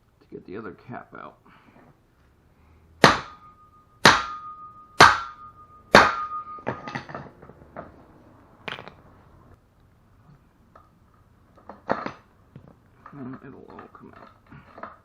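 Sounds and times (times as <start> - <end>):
hammer striking metal: 3.0 - 7.5.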